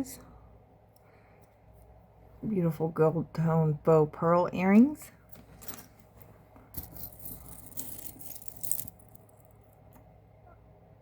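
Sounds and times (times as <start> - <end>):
jewelry clinking and rustling: 5.3 - 9.9.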